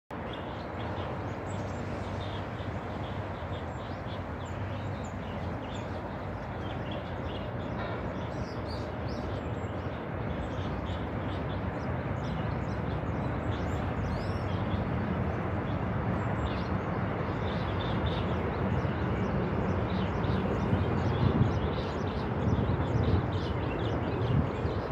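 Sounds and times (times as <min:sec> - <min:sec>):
small birds chirping: 0:00.2 - 0:24.9.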